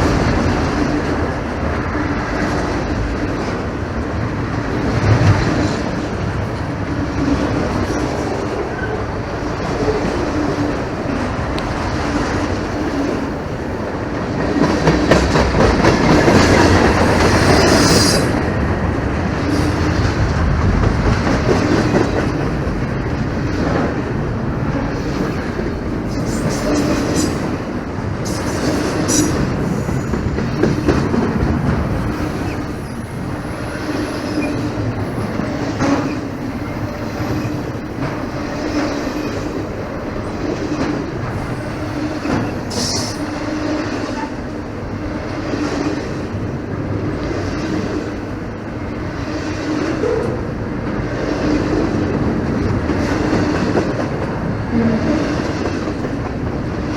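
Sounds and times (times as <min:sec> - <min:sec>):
train wheels clacking over rails: 0:00.0 - 0:56.9
high squeal: 0:28.2 - 0:30.2.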